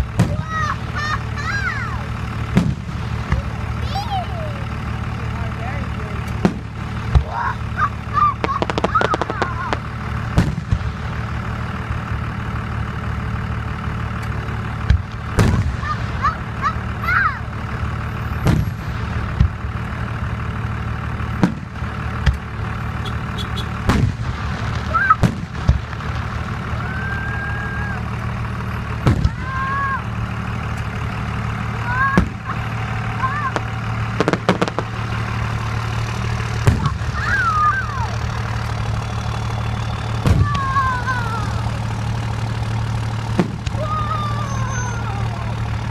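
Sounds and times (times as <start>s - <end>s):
fireworks bangs: 0.0s - 3.9s, 6.2s - 11.7s, 14.8s - 17.0s, 18.4s - 19.8s, 21.3s - 22.4s, 23.0s - 27.6s, 28.9s - 29.8s, 31.9s - 44.6s
fireworks crackles: 0.0s - 12.8s, 13.6s - 17.0s, 17.6s - 45.9s
whistle-like tones: 44.2s - 45.1s.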